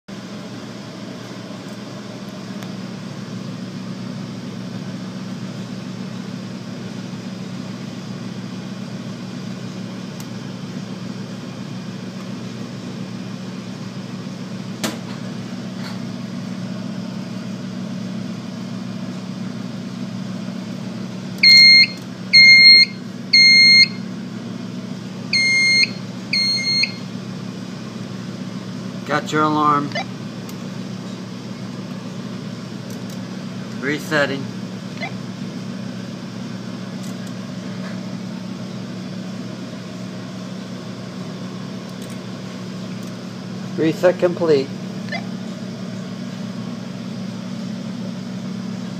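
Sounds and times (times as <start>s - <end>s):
steady low hum: 0.1s - 48.9s
fire alarm beeping: 21.4s - 24.0s, 25.3s - 27.1s.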